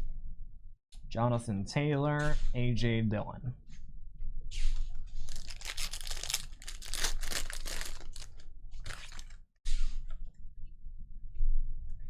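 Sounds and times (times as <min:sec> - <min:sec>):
wrapper crinkling and tearing: 0:05.2 - 0:09.4.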